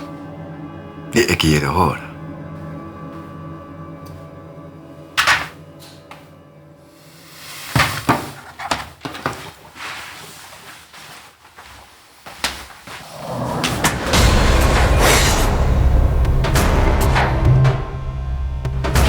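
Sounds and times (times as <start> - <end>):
faint background music: 0.0 - 8.4.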